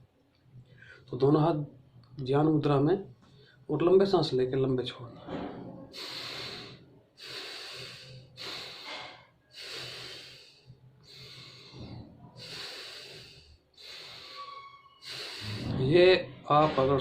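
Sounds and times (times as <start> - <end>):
man breathing forcefully through nose: 5.9 - 15.8.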